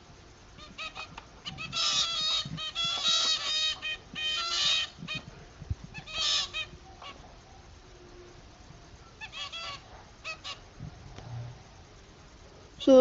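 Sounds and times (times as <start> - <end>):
finches calling: 0.6 - 5.3, 5.9 - 7.3, 9.0 - 10.7.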